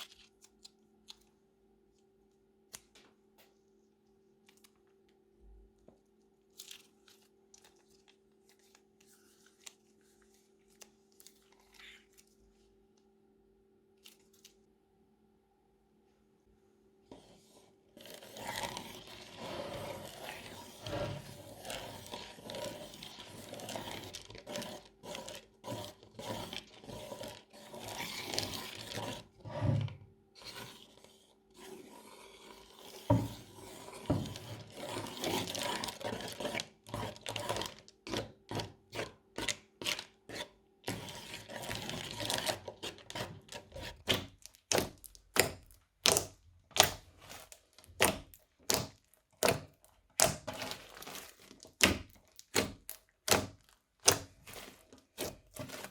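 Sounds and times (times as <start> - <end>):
crunchy slime squished: 0.0 - 1.2, 18.0 - 29.4, 32.8 - 55.9.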